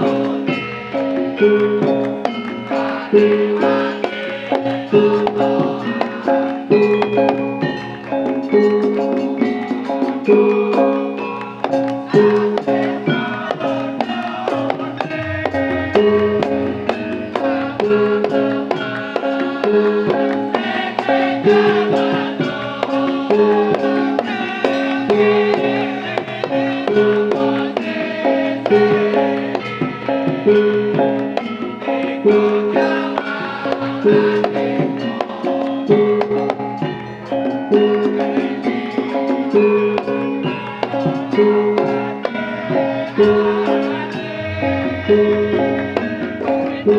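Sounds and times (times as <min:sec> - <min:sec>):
struck percussion: 0:00.0 - 0:46.9
sustained melodic notes: 0:00.0 - 0:46.9
voices singing: 0:00.0 - 0:46.9
struck pitched notes: 0:11.7 - 0:22.6, 0:43.1 - 0:46.9.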